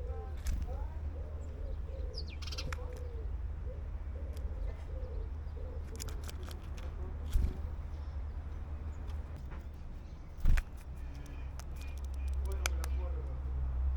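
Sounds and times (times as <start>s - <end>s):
pigeon cooing: 0.0s - 7.8s
sharp clicks: 2.4s - 3.1s, 5.8s - 7.0s, 10.4s - 13.0s.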